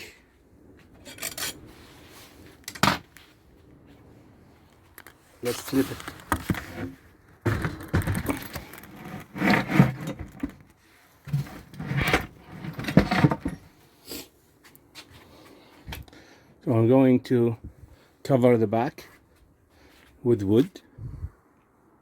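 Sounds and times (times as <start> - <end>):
wooden box knocking and scraping: 6.1 - 10.6, 11.3 - 13.7.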